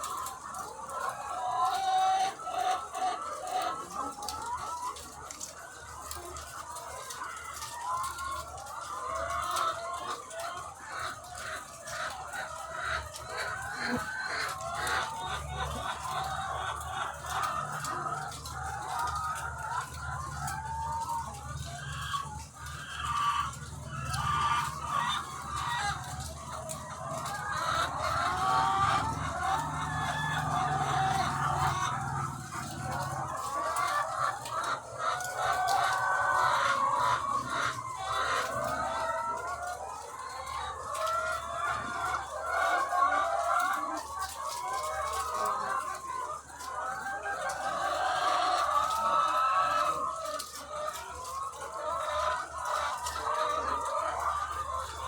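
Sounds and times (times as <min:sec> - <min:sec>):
hens clucking: 0:00.0 - 0:55.0.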